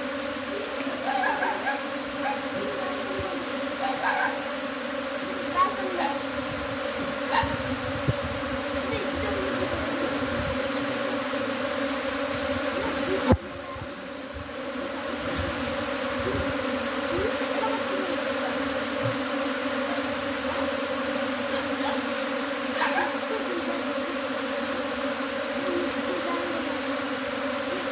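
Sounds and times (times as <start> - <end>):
bees buzzing: 0.0 - 27.9.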